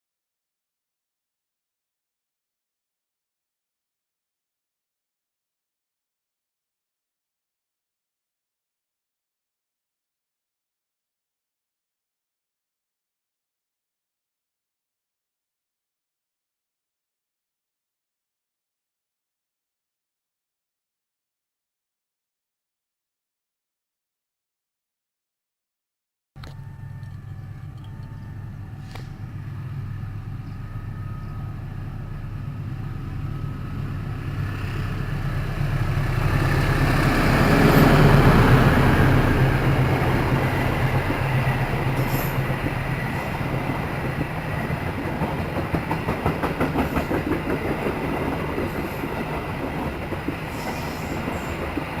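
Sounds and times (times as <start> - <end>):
locomotive engine hum: 26.4 - 52.0
train wheels clickety-clack: 40.9 - 52.0.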